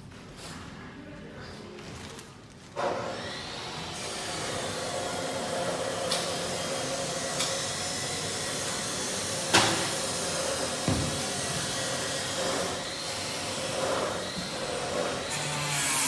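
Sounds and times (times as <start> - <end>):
power tool whirring: 2.9 - 16.0.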